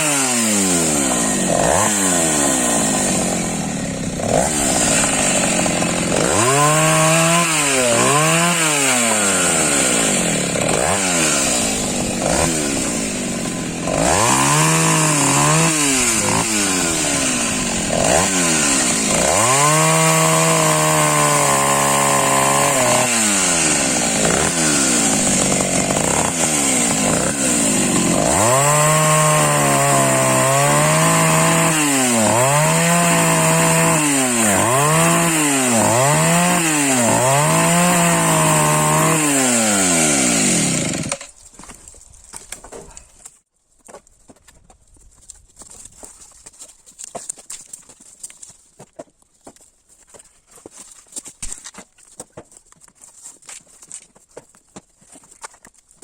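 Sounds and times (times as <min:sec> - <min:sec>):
chainsaw revving: 0:00.0 - 0:41.3.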